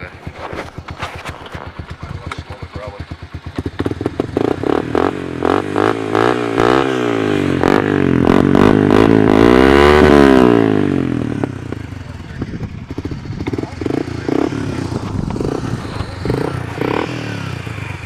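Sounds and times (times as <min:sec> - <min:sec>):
motorcycle engine revving: 0:00.0 - 0:18.0.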